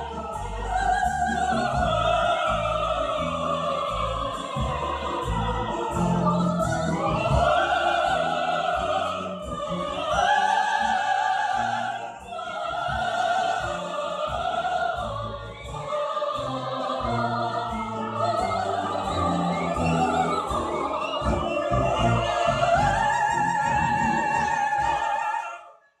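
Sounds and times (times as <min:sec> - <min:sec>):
operatic singing: 0:00.0 - 0:26.0
orchestra playing: 0:16.6 - 0:24.4.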